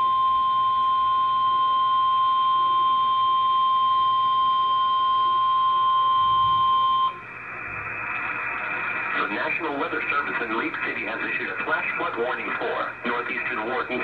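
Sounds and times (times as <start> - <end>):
long high alert beep: 0.0 - 7.2.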